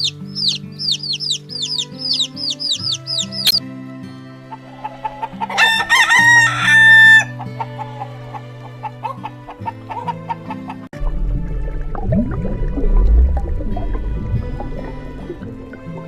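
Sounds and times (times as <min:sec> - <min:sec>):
chickens clucking: 0:00.0 - 0:03.6, 0:04.4 - 0:10.9
light background music: 0:00.0 - 0:16.0
rooster crowing: 0:04.6 - 0:09.2.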